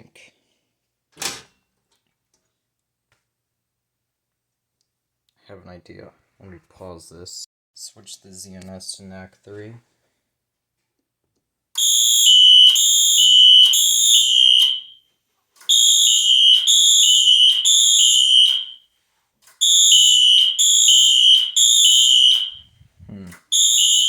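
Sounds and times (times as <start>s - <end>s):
fire alarm horns pulsing: 11.8s - 15.0s, 15.7s - 18.8s, 19.6s - 22.7s, 23.5s - 24.0s.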